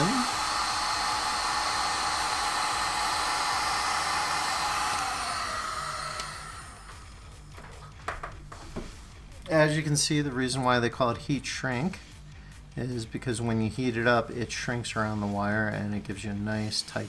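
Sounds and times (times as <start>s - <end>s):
heat gun blowing air: 0.0s - 7.5s
fan winding down whine: 0.0s - 7.9s.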